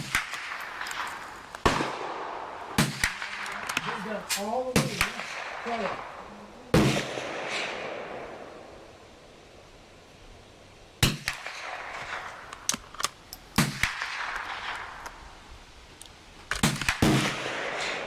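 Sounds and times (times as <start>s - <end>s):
gunshots with echo: 0.0s - 8.6s, 16.6s - 18.0s.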